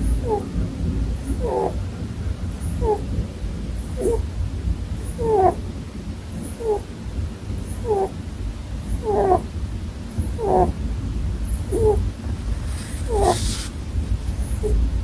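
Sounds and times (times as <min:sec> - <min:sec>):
rabbit snoring: 0:01.2 - 0:02.0, 0:02.6 - 0:03.2, 0:03.8 - 0:04.3, 0:05.0 - 0:05.7, 0:06.4 - 0:08.2, 0:08.8 - 0:09.5, 0:10.1 - 0:10.8, 0:11.5 - 0:13.8.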